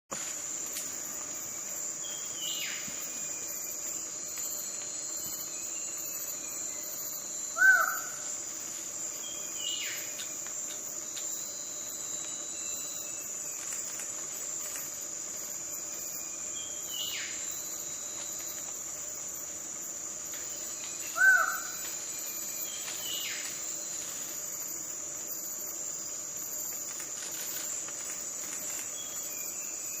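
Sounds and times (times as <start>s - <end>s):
insects droning: 0.1s - 30.0s
faint bird calls: 7.6s - 8.2s, 21.1s - 21.8s
loud bird calls: 7.6s - 8.2s, 21.1s - 21.8s.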